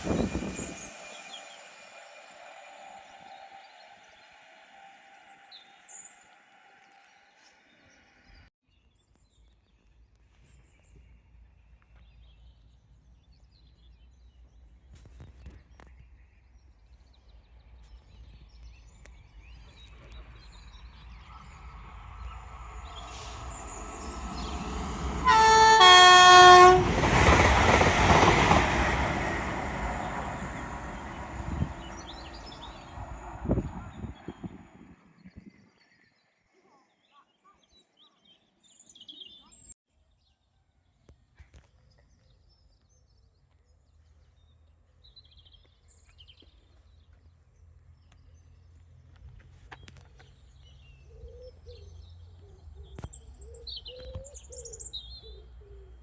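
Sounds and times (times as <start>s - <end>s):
train rumble: 0.0s - 6.8s, 18.9s - 35.2s
two-note train horn: 22.9s - 27.7s.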